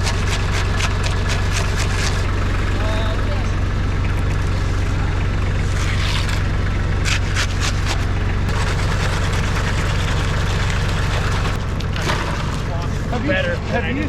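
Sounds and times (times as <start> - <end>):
concrete mixer engine running: 0.0 - 14.0
concrete discharging: 8.5 - 11.6.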